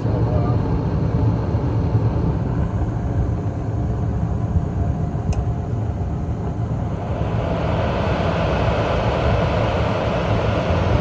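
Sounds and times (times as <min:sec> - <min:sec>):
gas furnace running: 0:00.0 - 0:11.0
light tick: 0:05.3 - 0:05.5.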